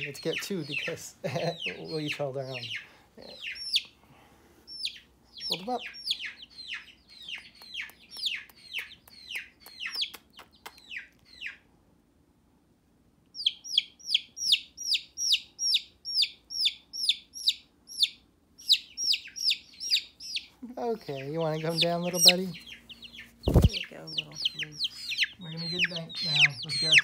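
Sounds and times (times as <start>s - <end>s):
baby chicks peeping: 0.0s - 4.0s, 4.6s - 11.7s, 13.3s - 27.0s.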